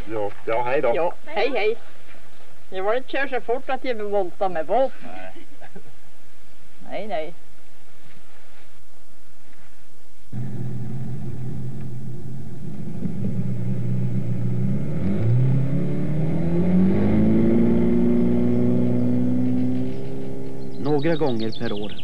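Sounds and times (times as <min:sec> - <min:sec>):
car engine revving: 0:10.3 - 0:21.2.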